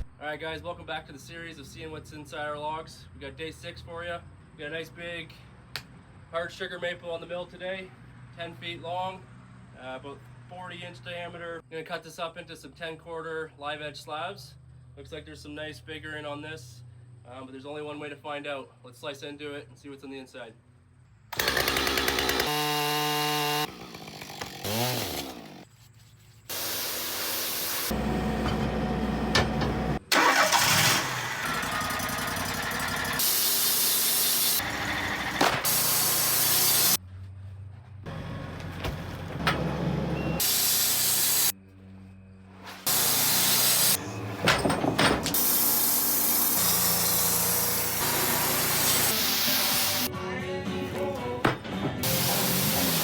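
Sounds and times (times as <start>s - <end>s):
sawmill engine running: 21.4s - 25.6s, 26.5s - 37.0s, 38.1s - 41.5s, 42.9s - 50.1s, 50.8s - 53.0s
saw blade cutting wood: 21.4s - 25.8s, 26.5s - 30.0s, 31.7s - 37.0s, 40.4s - 41.5s, 42.7s - 44.4s, 45.3s - 50.1s, 51.5s - 53.0s.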